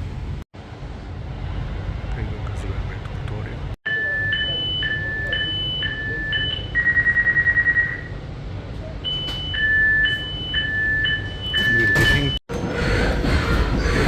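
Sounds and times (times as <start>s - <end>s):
train door warning two-tone beep: 3.9s - 8.2s, 9.0s - 12.4s.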